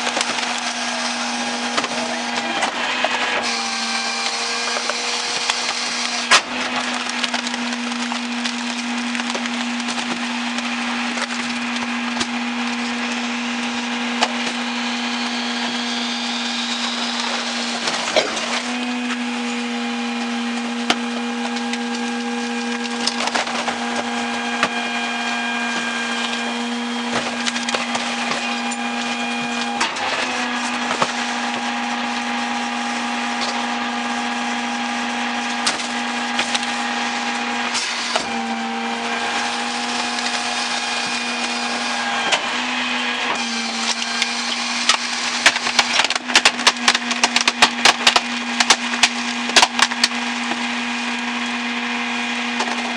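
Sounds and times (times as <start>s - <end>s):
garbage truck engine and hydraulics: 0.0s - 52.9s.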